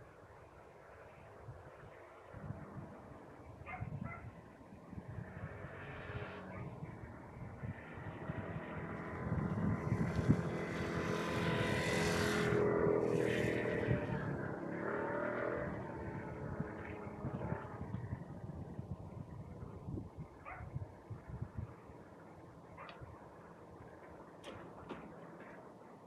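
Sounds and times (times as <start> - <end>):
motor vehicle passing by: 2.1 - 18.8.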